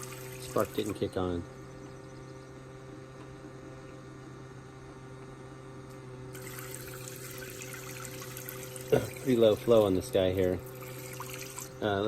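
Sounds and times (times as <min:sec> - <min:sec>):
water running: 0:00.0 - 0:01.3, 0:06.4 - 0:12.0
steady low hum: 0:00.0 - 0:12.0
hiss of water: 0:10.6 - 0:11.8.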